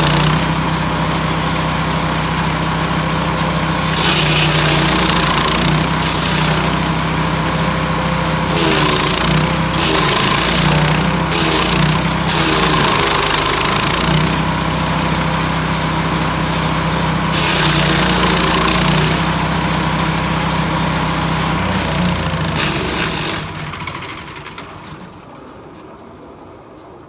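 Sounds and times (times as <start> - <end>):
wood chipper engine running: 0.0 - 26.7
branches being chipped: 3.8 - 7.0, 8.4 - 14.4, 17.3 - 19.6.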